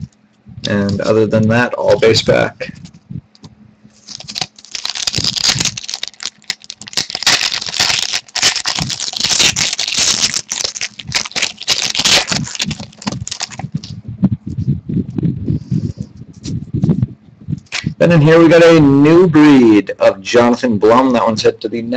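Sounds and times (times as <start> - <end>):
wrapper crinkling and tearing: 4.0 - 13.9.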